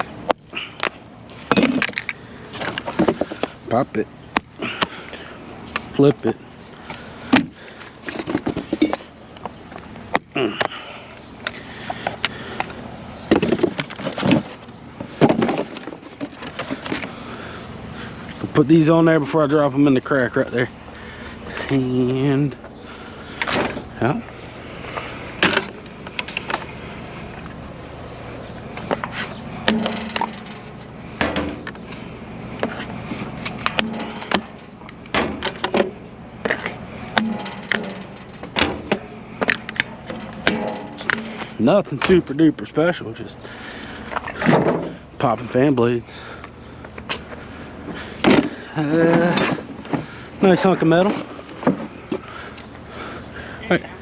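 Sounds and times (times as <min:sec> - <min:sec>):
fan being broken apart: 0:01.5 - 0:03.4, 0:13.3 - 0:17.2, 0:29.6 - 0:31.8, 0:33.4 - 0:41.7.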